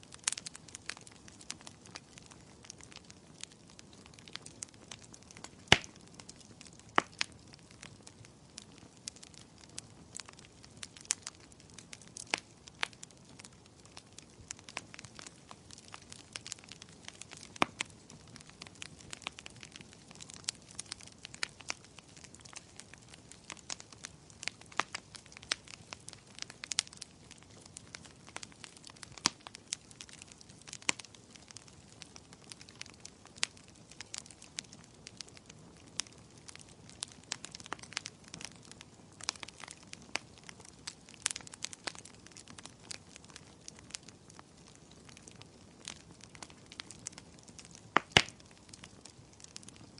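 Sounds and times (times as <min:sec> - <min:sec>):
firewood crackling and popping: 0:00.0 - 0:49.9
low rush of flames: 0:00.0 - 0:49.9.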